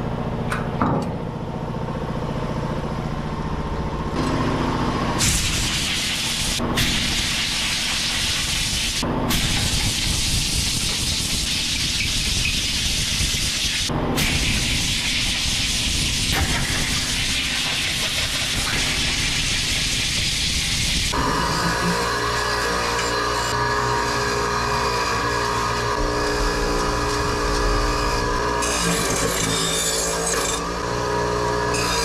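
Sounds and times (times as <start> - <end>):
steady low rumble: 26.0 - 29.5.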